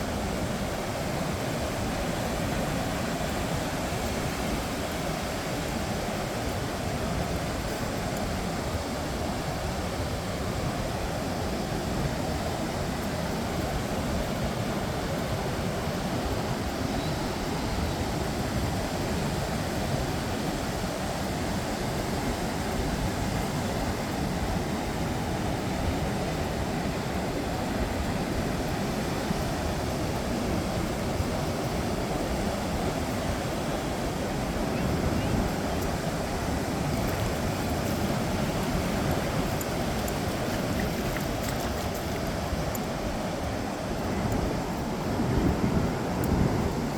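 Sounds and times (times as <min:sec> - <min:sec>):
wind buffeting microphone: 0:00.0 - 0:46.9
ocean surf rushing: 0:13.0 - 0:46.9.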